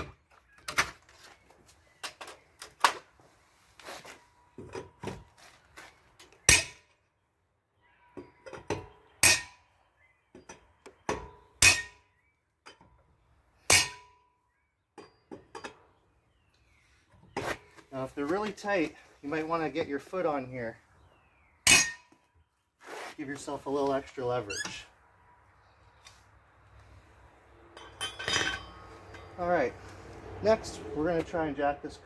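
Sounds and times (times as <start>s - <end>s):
faint metallic ring: 27.7s - 29.4s.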